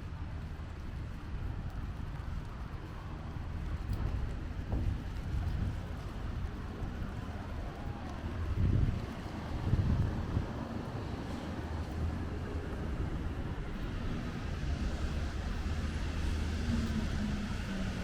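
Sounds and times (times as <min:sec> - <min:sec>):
tyres hissing on wet road: 0:04.0 - 0:18.0
rain hissing: 0:08.1 - 0:18.0.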